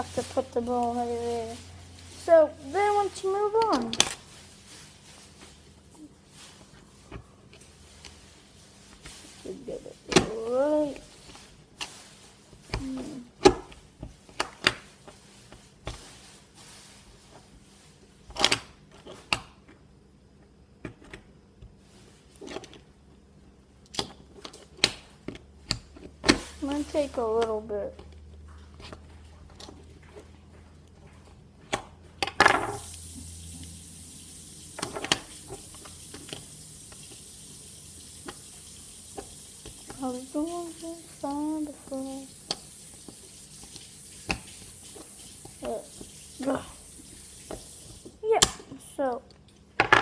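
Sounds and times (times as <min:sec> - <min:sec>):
steady high hiss: 0:32.5 - 0:49.2.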